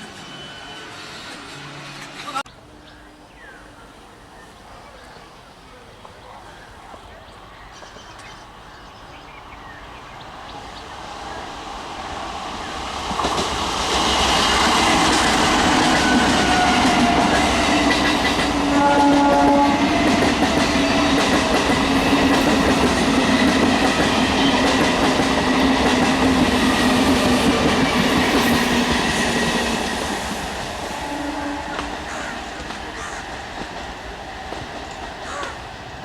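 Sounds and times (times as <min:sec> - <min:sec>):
train wheels rumbling on rails: 0:10.2 - 0:36.0
train horn: 0:14.8 - 0:21.1, 0:30.8 - 0:32.7.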